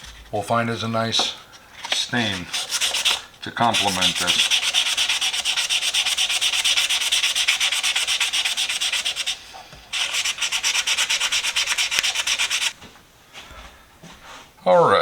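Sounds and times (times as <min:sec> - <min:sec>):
sandpaper rasping on wood: 0:02.2 - 0:12.8.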